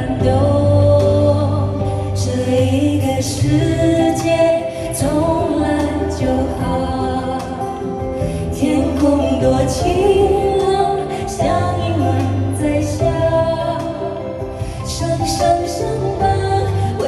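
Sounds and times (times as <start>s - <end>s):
band accompaniment with bass: 0.0s - 17.0s
person singing: 0.0s - 17.0s.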